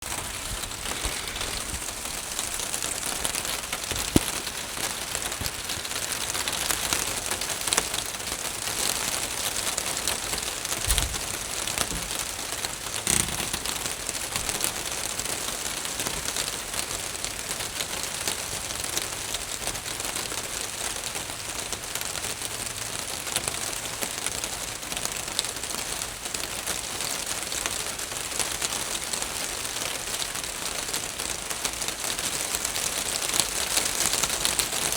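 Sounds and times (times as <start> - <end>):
rain pattering on a roof: 0.0 - 34.9
heavy drops knocking: 10.8 - 12.4.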